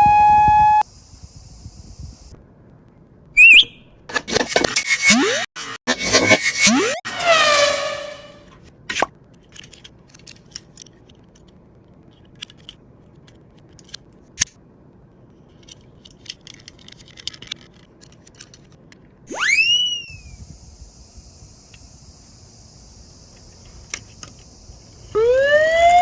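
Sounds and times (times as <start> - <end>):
rising whistle-like swoop: 3.4 - 3.8, 6.2 - 8.4, 19.3 - 20.6
toy cars clicking and rolling: 9.4 - 11.6, 12.2 - 14.1, 15.5 - 19.1.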